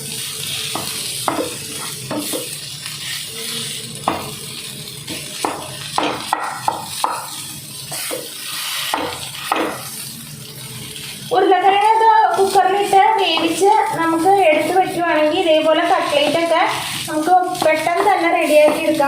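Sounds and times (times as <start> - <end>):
food sizzling in pan: 0.0 - 19.0
spoon scraping and knocking pan: 0.7 - 2.6, 5.1 - 10.0, 17.5 - 19.0.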